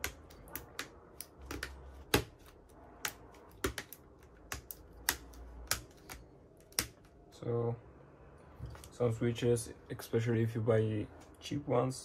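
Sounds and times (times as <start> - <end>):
keyboard switches clicking: 3.0 - 7.1.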